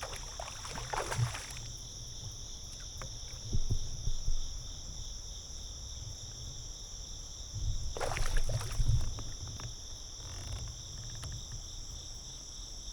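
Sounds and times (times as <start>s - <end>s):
clattering and splashing: 0.0s - 1.8s, 8.0s - 9.7s
insects chirping: 0.0s - 12.9s.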